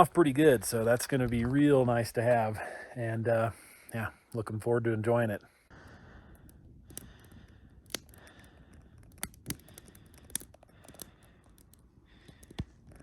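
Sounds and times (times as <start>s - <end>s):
campfire crackling: 0.0s - 2.2s, 5.7s - 13.0s.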